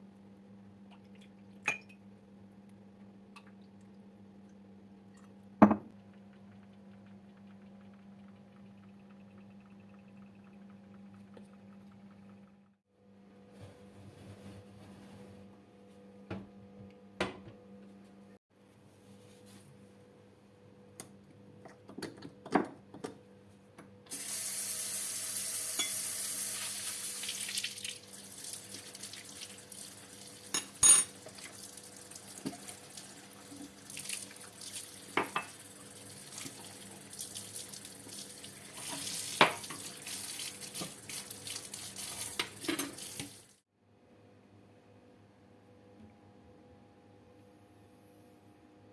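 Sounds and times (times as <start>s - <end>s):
tap water running into sink: 24.1s - 43.5s
dishes clinking: 30.6s - 31.2s.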